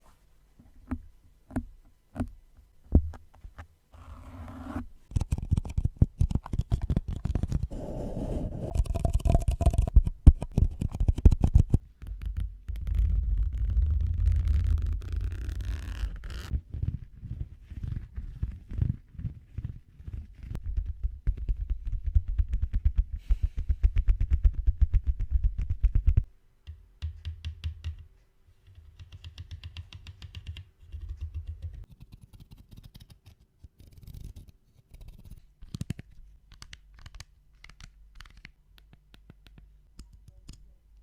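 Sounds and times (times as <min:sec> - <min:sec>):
rubbing sound: 0:06.6 - 0:11.8.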